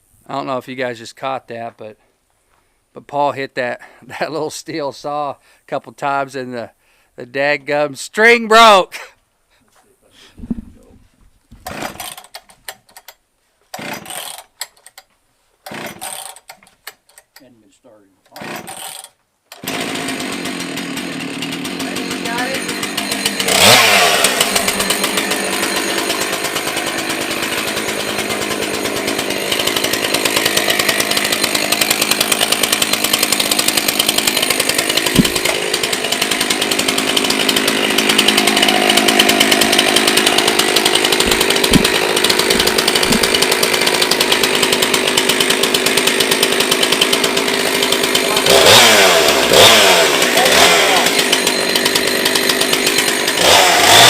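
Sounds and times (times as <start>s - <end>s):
chainsaw running: 11.6s - 13.0s, 13.7s - 14.9s, 15.6s - 17.3s, 18.3s - 54.0s.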